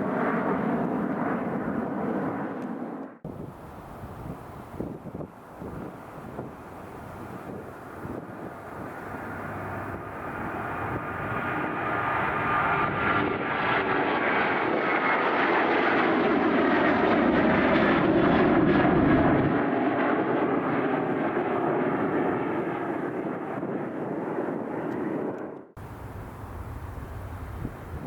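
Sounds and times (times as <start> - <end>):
jet engines roaring: 0.0 - 28.0.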